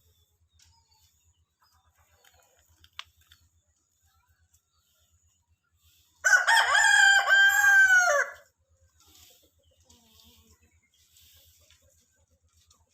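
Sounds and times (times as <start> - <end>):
rooster crowing: 6.2 - 8.5.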